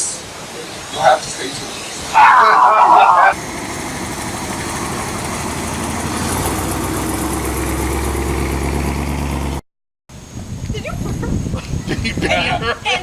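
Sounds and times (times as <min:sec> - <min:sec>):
engine idling: 0:03.3 - 0:09.6.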